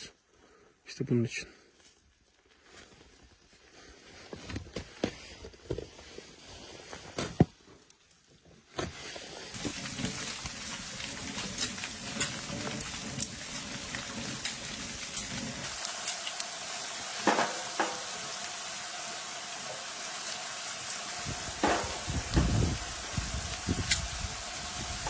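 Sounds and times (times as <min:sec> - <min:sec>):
campfire crackling and hissing: 0:09.4 - 0:25.0.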